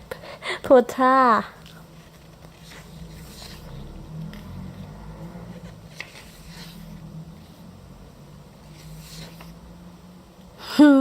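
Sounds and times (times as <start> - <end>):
low steady hum: 0.0 - 11.0
magazine pages turning: 1.6 - 4.7, 5.5 - 7.1, 8.6 - 9.6.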